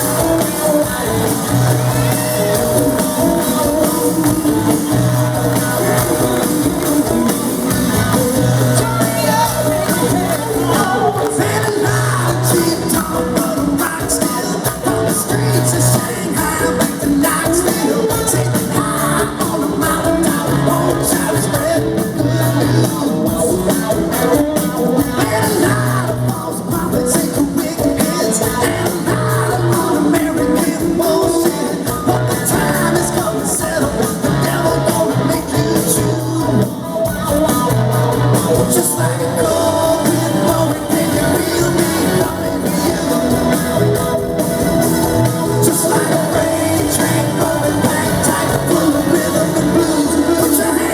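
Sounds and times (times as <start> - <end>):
electric guitar: 0.0 - 50.9
lead singer singing: 0.0 - 50.9
live rock band playing: 0.0 - 50.9.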